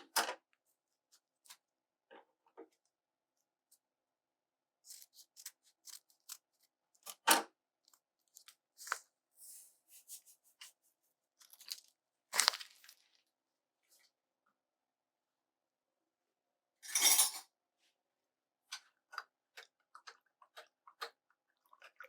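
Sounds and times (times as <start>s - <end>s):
paper packet crinkling and tearing: 4.9s - 7.2s, 7.8s - 9.0s, 11.4s - 13.3s.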